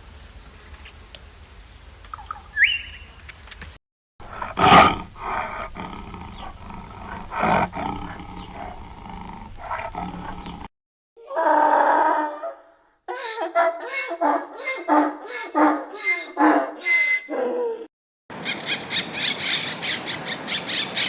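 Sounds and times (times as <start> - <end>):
faint bird chirps: 2.1 - 3.4
animal's loud pitched calls: 11.4 - 17.6.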